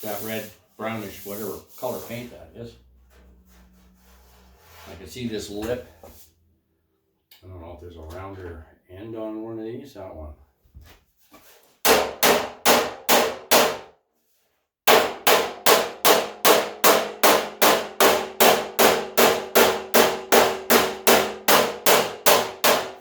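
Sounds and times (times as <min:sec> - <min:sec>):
hammer striking sheet metal: 0:11.8 - 0:13.9, 0:14.9 - 0:23.0.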